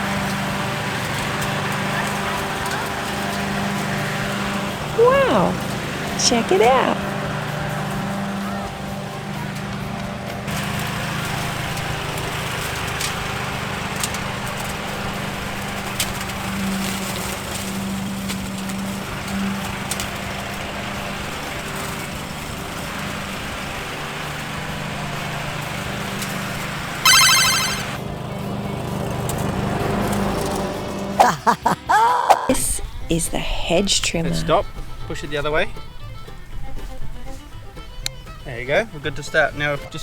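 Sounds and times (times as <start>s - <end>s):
lawn mower engine running: 0.0s - 31.2s
short bright ringing tone: 27.1s - 28.0s.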